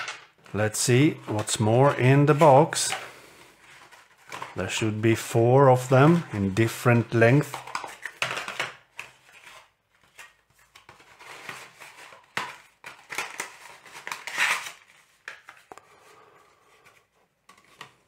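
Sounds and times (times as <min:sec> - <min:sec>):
packaging rustling: 0:00.4 - 0:04.6, 0:07.5 - 0:16.0.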